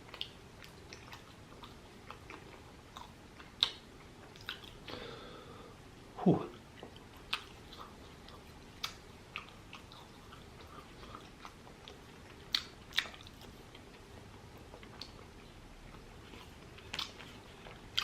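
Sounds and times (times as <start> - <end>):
person chewing food: 0.0 - 5.2, 6.5 - 18.0
mouth clicks and smacks: 6.8 - 13.6.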